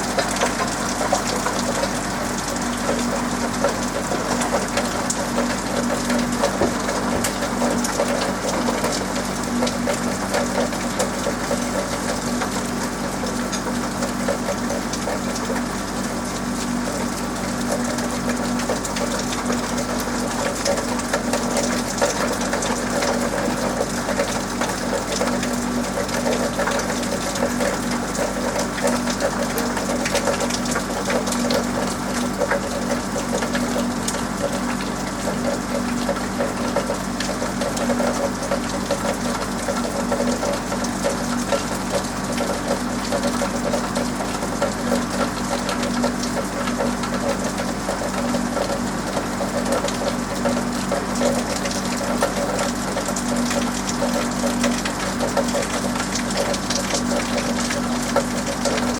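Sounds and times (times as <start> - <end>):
constant mechanical hum: 0.0 - 58.9
rain falling on a roof: 0.0 - 58.9.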